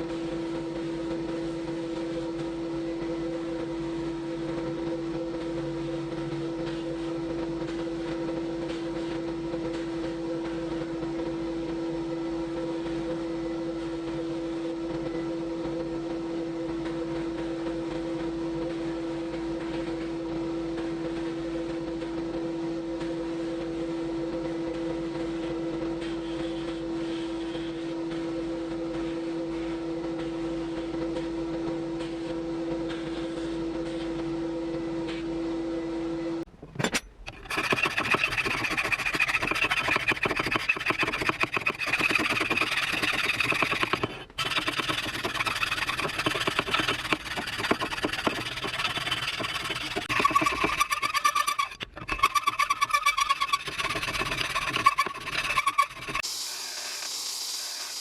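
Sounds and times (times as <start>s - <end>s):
power tool motor humming: 37.3s - 58.0s.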